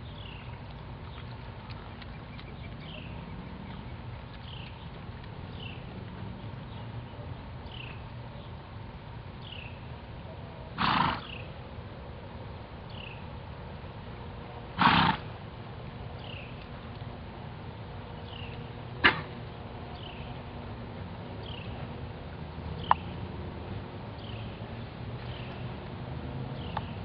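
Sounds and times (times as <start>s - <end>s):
horse coughing: 14.8s - 15.2s.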